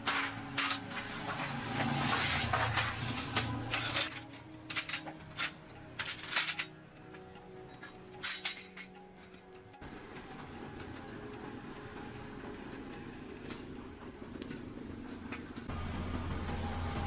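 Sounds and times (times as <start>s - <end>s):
soft background music: 0.0s - 17.0s
metal parts clinking: 2.6s - 9.4s.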